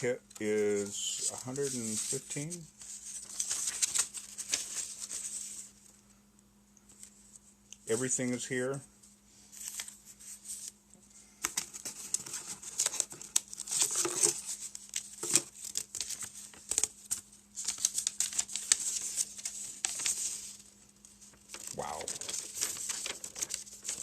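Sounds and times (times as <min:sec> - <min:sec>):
packaging crinkling: 0:03.1 - 0:05.6, 0:11.6 - 0:24.0.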